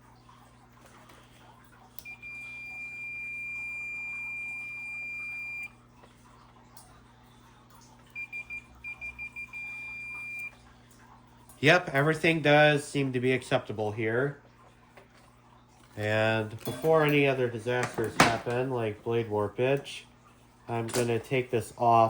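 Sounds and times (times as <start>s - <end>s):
continuity meter beeping: 2.0s - 5.8s, 8.1s - 10.6s.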